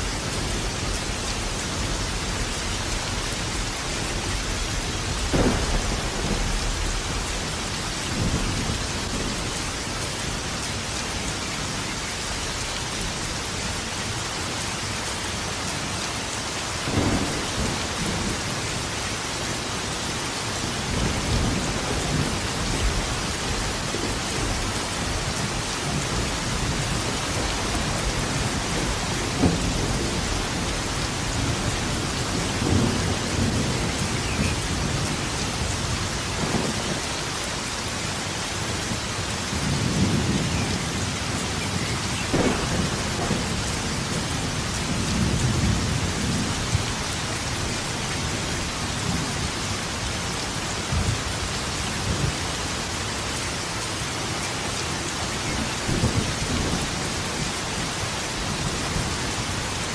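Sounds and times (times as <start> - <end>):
rain hissing: 0.0 - 59.9
thunder rumbling: 0.2 - 11.4, 16.8 - 19.0, 20.6 - 37.2, 38.6 - 50.0.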